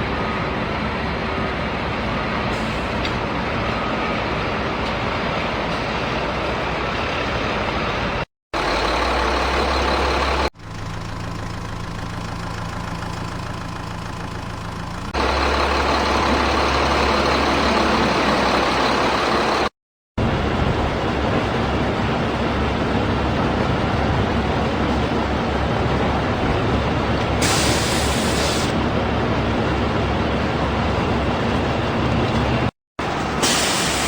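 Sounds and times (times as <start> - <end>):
engine running with low hum: 0.0 - 33.5.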